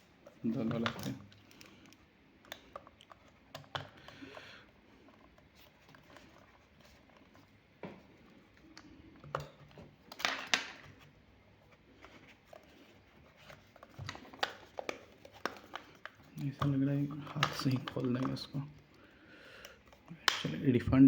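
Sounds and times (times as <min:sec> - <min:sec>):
plastic clicks: 0:00.5 - 0:06.5, 0:08.5 - 0:11.0, 0:13.4 - 0:19.0, 0:19.6 - 0:20.6.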